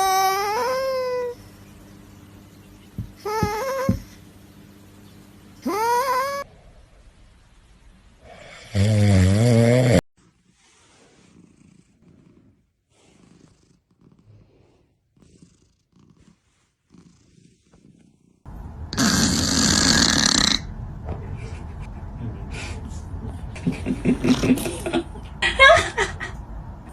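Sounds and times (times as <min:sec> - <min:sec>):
cat wavering call: 0:00.0 - 0:01.4, 0:03.0 - 0:04.1, 0:05.6 - 0:06.5
cat breathing: 0:19.0 - 0:23.6.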